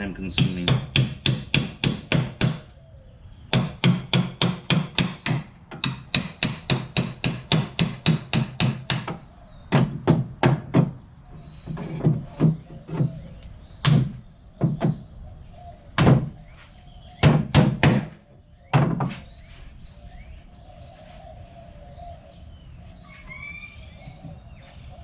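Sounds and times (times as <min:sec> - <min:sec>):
bird chirping: 0:00.0 - 0:25.0
hammer striking wood: 0:00.4 - 0:02.7, 0:03.5 - 0:11.0, 0:13.8 - 0:15.0, 0:16.0 - 0:16.4, 0:17.2 - 0:19.2.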